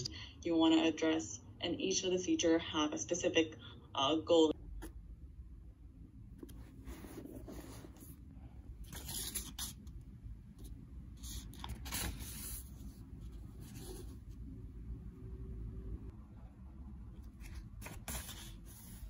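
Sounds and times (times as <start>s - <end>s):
low steady hum: 0.0s - 19.0s
faint scraping and rustling: 6.4s - 8.2s.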